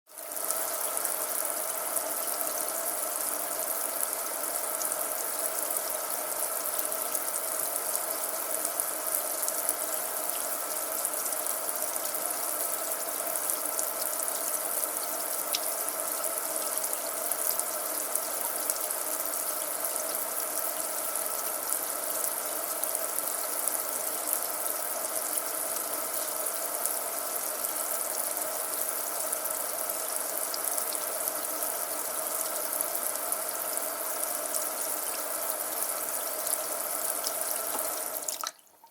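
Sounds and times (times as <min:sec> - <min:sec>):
tap water running into sink: 0:36.4 - 0:38.9.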